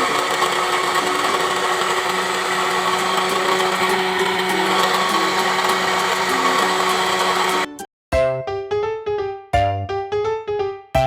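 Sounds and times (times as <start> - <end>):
electric blender whirring: 0.0 - 7.8.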